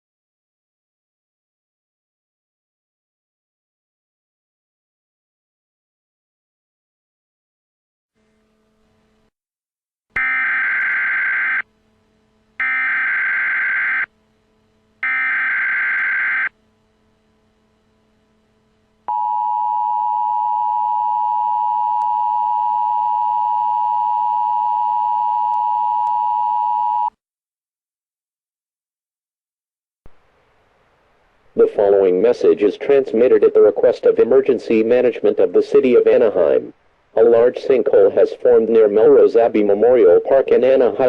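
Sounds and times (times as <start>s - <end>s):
two-tone attention signal: 10.2s - 11.6s.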